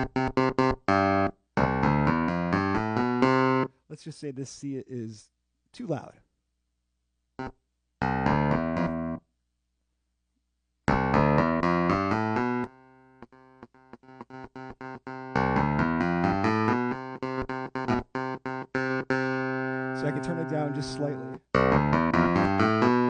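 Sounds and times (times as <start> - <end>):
clavinet notes: 0.0 - 3.7, 7.4 - 9.2, 10.9 - 23.0.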